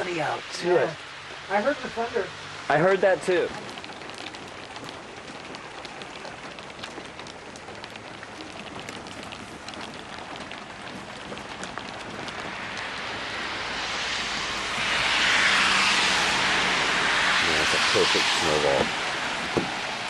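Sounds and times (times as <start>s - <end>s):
hail ticking on surfaces: 0.0s - 20.0s
steady hiss: 7.7s - 20.0s.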